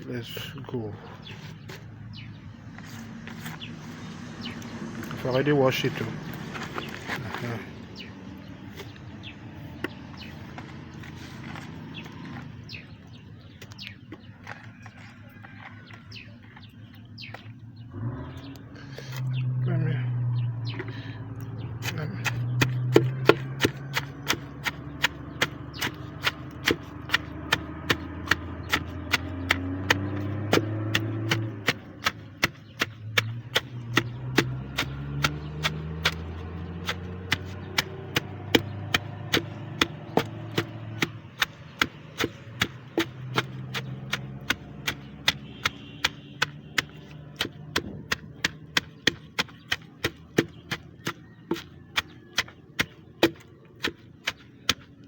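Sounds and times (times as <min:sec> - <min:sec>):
pestle pounding in a mortar: 0:21.8 - 0:55.0.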